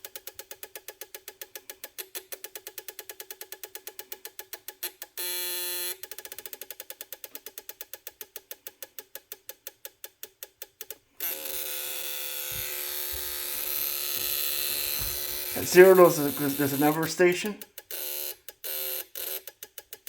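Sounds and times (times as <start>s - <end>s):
electronic buzz: 11.2s - 17.3s
buzzy hiss: 12.4s - 17.5s
rapid electronic clicks: 14.2s - 18.0s.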